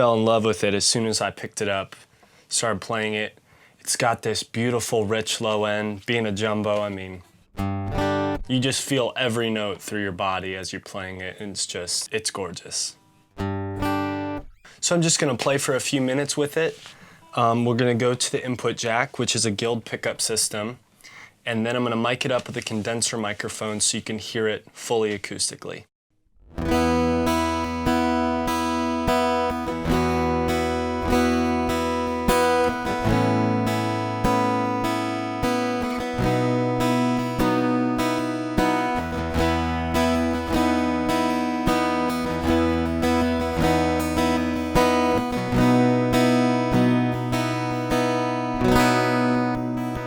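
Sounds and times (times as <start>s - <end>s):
acoustic guitar strummed chords: 7.6s - 8.7s, 13.0s - 14.6s, 26.4s - 50.0s.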